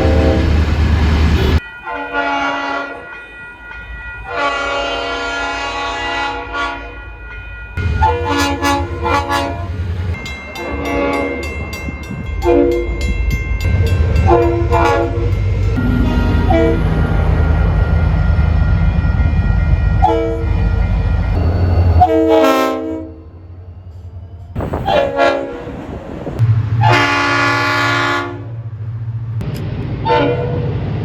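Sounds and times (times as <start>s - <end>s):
train horn chords: 0.0s - 0.7s, 1.3s - 3.0s, 4.3s - 7.0s, 7.8s - 9.9s, 10.6s - 11.5s, 12.4s - 13.0s, 13.7s - 18.2s, 20.0s - 20.6s, 21.9s - 23.3s, 24.7s - 25.8s, 26.4s - 28.8s, 30.0s - 30.7s
passing train rumble: 0.0s - 31.0s.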